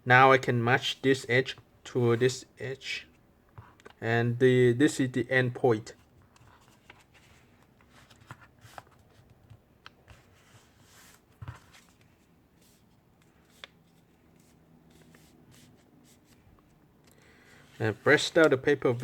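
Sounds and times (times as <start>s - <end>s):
thick paper rustling and creasing: 17.5s - 19.0s.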